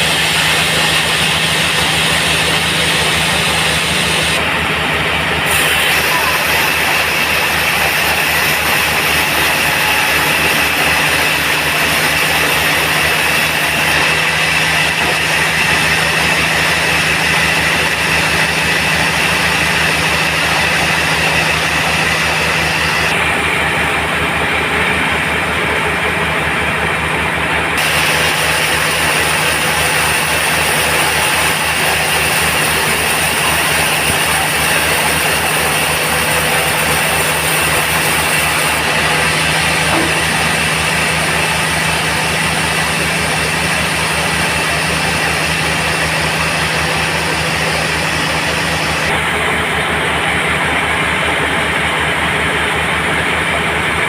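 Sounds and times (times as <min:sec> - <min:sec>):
band sawmill droning: 0:00.0 - 0:54.0.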